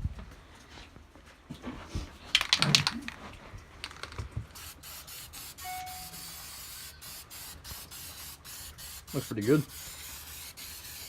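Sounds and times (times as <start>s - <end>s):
spray can rattling: 3.8s - 11.0s
spray paint bursts: 4.6s - 11.0s.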